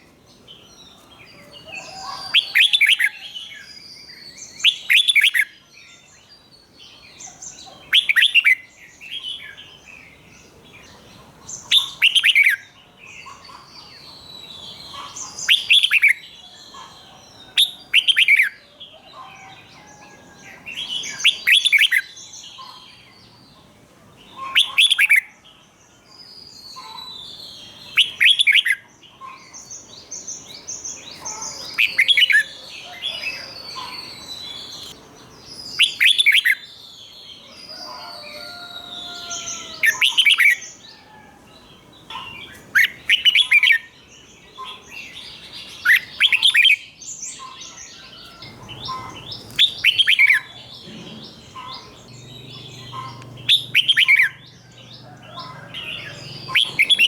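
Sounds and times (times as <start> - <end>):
bird singing quick phrases: 48.4 - 57.0.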